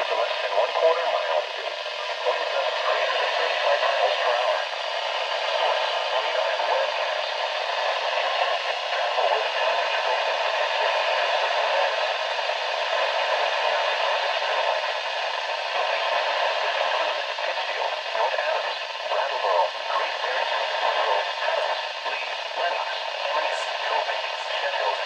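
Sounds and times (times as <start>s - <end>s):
radio static hiss: 0.0s - 25.0s.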